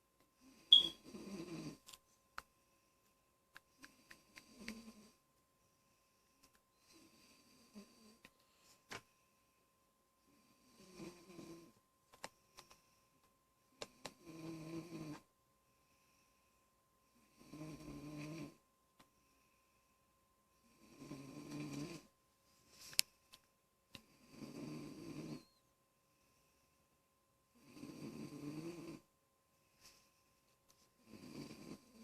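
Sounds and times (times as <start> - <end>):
child snoring: 1.0 - 1.8, 10.5 - 11.8, 14.2 - 15.2, 17.3 - 18.6, 20.8 - 22.1, 24.2 - 25.5, 27.6 - 29.1, 31.0 - 32.0.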